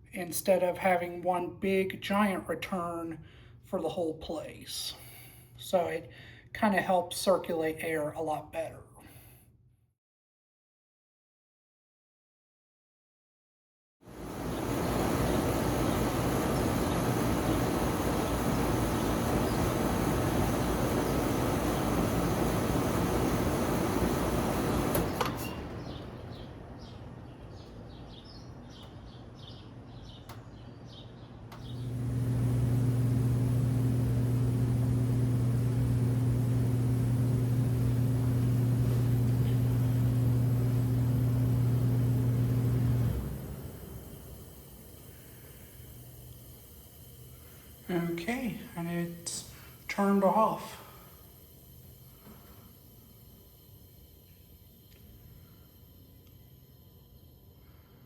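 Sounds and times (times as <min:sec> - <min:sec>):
air conditioner air rush: 0:00.0 - 0:08.2, 0:14.1 - 0:58.0
low electrical hum: 0:14.1 - 0:58.0.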